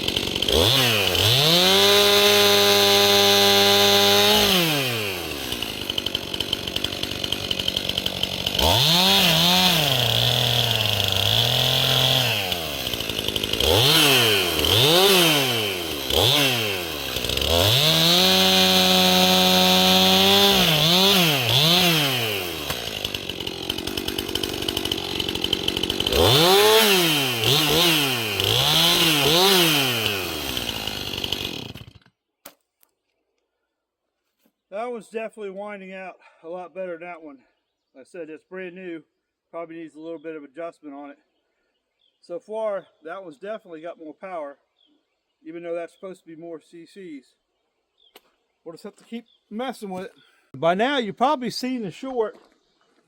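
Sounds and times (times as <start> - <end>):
chainsaw revving: 0.0 - 32.1.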